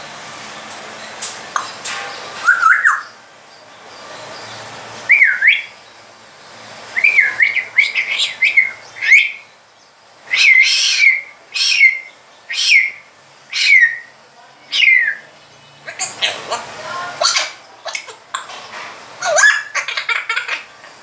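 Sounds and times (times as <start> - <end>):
parrot chirping: 1.5 - 5.9, 6.9 - 9.6, 10.3 - 21.0
parrot whistling: 2.4 - 3.2, 5.1 - 5.7, 7.0 - 9.4, 10.3 - 14.1, 15.9 - 18.5, 19.2 - 20.6.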